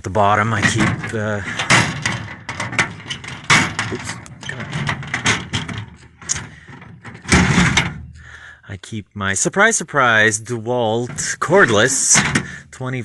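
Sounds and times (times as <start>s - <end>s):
tool chest knocks and rattling: 0.5s - 8.2s.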